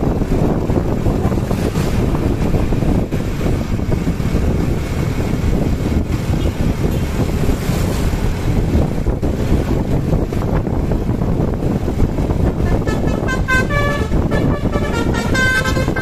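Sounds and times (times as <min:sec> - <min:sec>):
motorcycle engine and road rumble: 0:00.0 - 0:16.0
wind buffeting microphone: 0:00.0 - 0:16.0.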